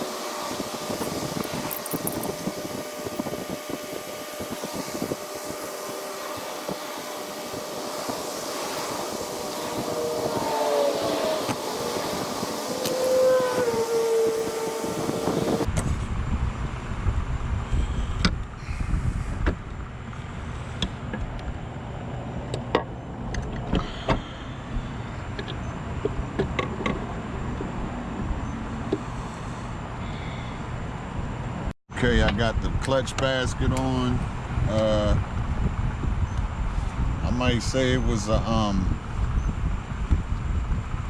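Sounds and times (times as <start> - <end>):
wavering pitched tone: 0.0 - 15.7.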